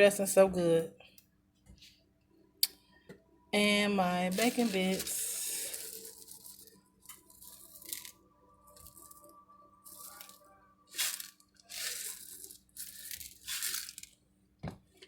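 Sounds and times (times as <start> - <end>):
bacon bits shaken from container: 4.3 - 8.2, 9.9 - 10.4, 11.0 - 14.1.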